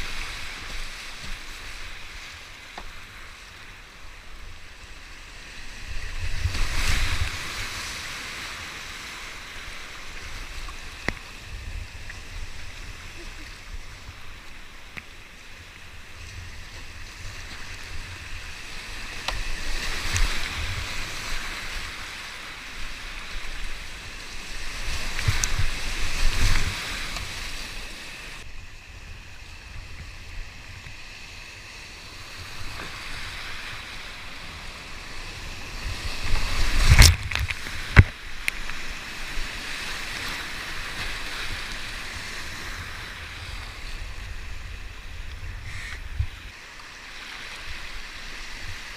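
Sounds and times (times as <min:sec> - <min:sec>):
whitewater rushing and splashing: 0:00.0 - 0:48.9.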